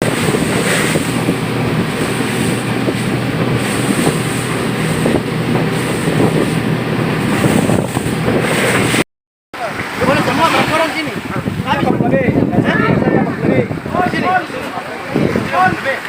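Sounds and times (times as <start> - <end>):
engine droning: 0.0 - 9.0
wind noise: 0.0 - 9.0, 9.6 - 16.0.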